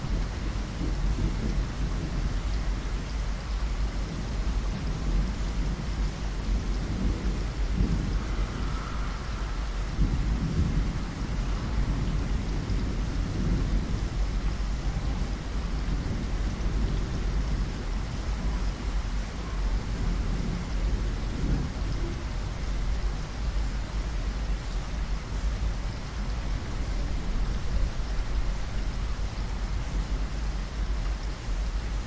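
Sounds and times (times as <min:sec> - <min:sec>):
steady rain: 0:00.0 - 0:32.0
thunder rumbling: 0:00.0 - 0:32.0.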